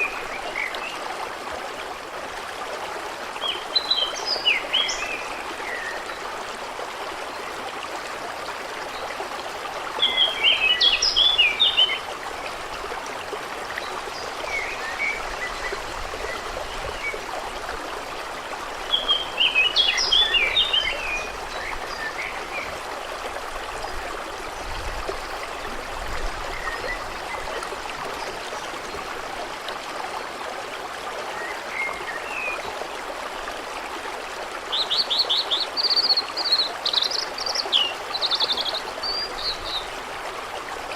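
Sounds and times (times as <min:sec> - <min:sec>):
stream running: 0:00.0 - 0:40.9.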